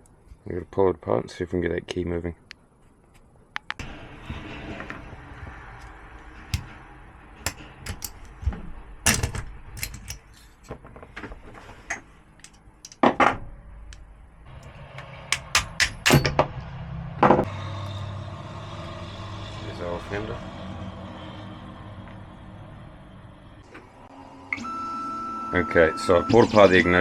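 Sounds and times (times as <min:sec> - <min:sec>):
clicks and metallic knocks of tools: 0:05.8 - 0:06.8, 0:07.4 - 0:10.8, 0:12.4 - 0:13.1, 0:14.6 - 0:16.5.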